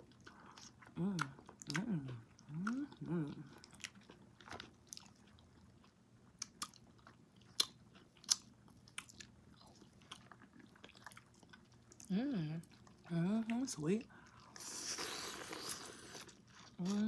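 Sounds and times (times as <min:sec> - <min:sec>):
chewing and biting: 0:00.0 - 0:12.1.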